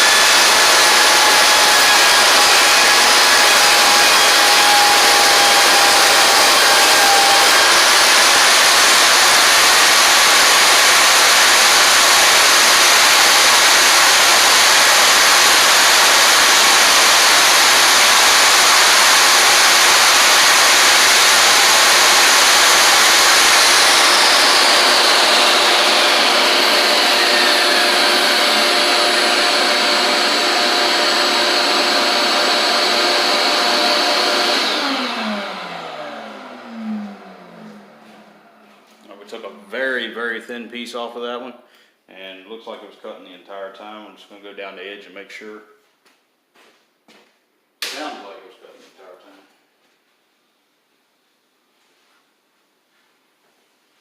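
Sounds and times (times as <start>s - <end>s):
shop vac running: 0.0s - 40.6s.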